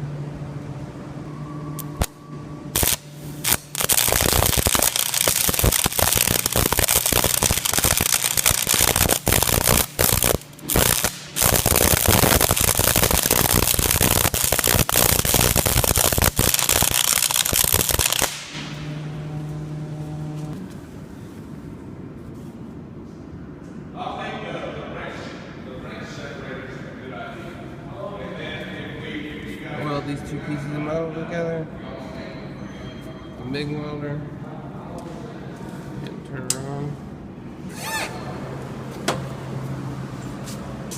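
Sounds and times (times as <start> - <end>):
low steady hum: 0.0 - 40.4
welding arc crackling: 1.8 - 20.6.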